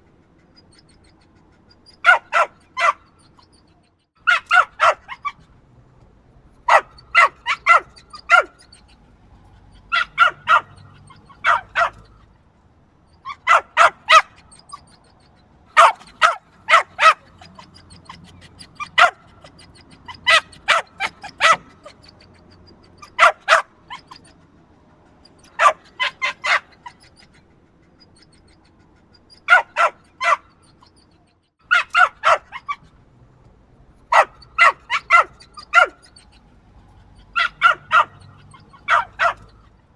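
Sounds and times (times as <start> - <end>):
small dog barking: 1.9 - 3.2, 4.2 - 5.5, 6.6 - 9.0, 9.8 - 12.2, 13.2 - 15.0, 15.7 - 24.4, 25.3 - 27.2, 29.3 - 31.0, 31.6 - 32.9, 34.1 - 36.3, 37.2 - 39.7.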